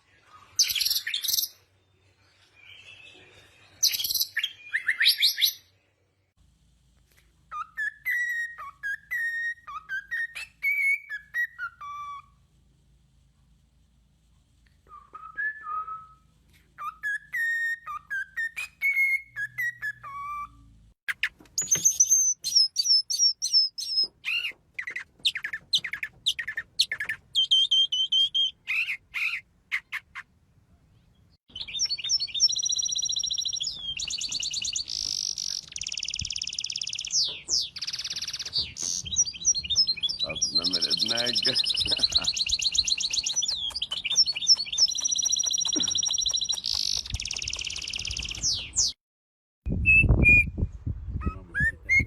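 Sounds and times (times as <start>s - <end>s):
gliding whistles: 14.8s - 20.7s
sharp high chirps: 31.6s - 48.7s.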